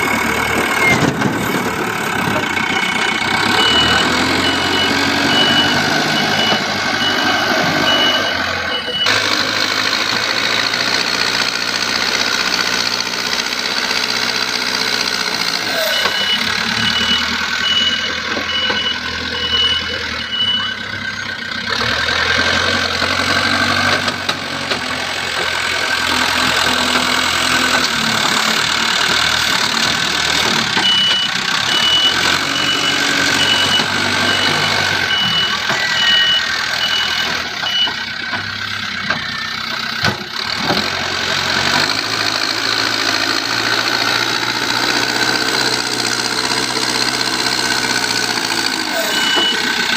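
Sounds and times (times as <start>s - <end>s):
diesel engine of digging machinery: 0.0s - 49.9s
electronic beeping: 48.8s - 49.9s.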